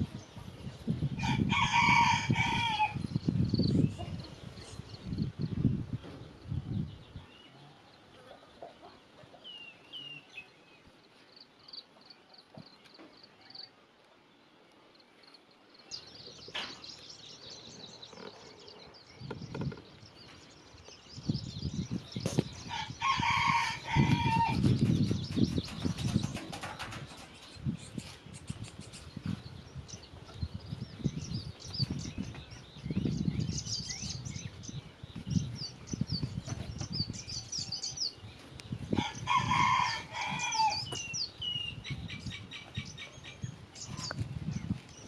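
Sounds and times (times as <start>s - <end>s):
rooster crowing: 1.2s - 3.0s, 22.7s - 24.6s, 39.0s - 41.0s.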